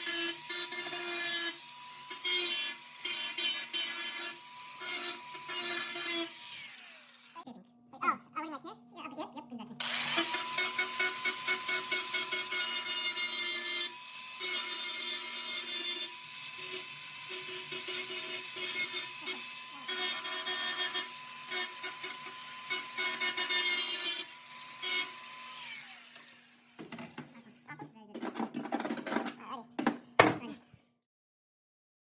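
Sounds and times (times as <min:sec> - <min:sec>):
power tool spinning high pitch: 0:00.0 - 0:07.5, 0:09.8 - 0:27.1
harsh grinding rasp: 0:09.8 - 0:27.5.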